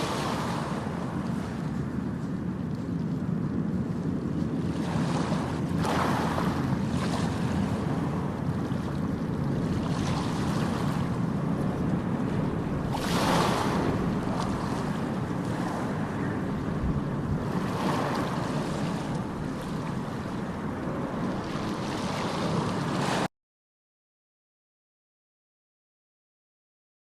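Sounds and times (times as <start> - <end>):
sea surf washing in: 0.0 - 2.3, 4.6 - 23.3
wind buffeting microphone: 0.0 - 23.3.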